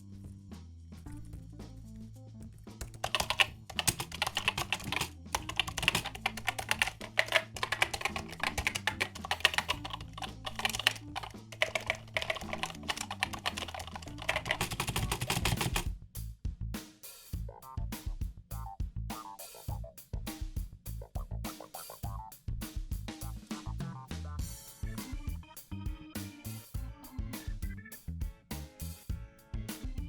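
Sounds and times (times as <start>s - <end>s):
quiet background music: 0.0s - 16.0s, 23.5s - 30.0s
fast typing on keyboard: 2.8s - 15.9s.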